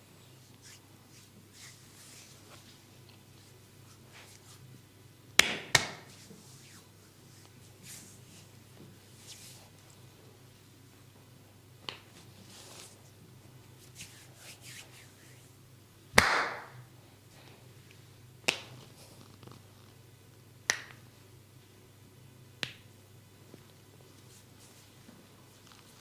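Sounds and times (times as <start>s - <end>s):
soft rubbing: 0.3s - 4.9s, 6.1s - 10.0s, 12.2s - 15.6s, 24.0s - 26.0s
sharp snaps from hands: 5.4s - 6.1s, 16.2s - 16.8s, 18.4s - 18.8s, 20.7s - 21.0s, 22.6s - 22.8s.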